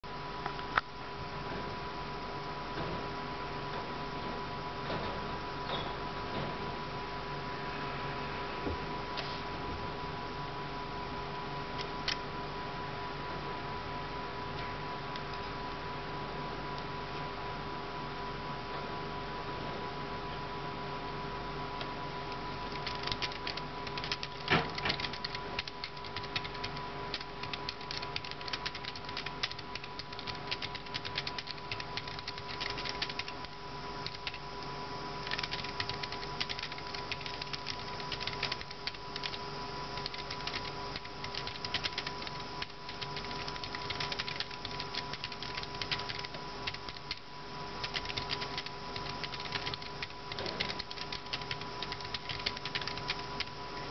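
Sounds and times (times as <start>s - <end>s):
keyboard key clicks: 22.8s - 26.6s.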